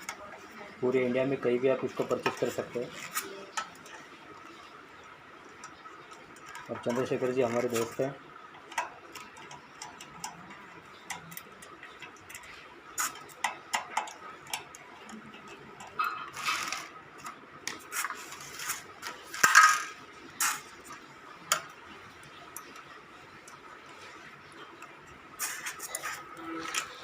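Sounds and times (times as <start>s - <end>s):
scraping and rustling: 16.0s - 17.0s, 17.7s - 21.0s, 25.4s - 27.0s.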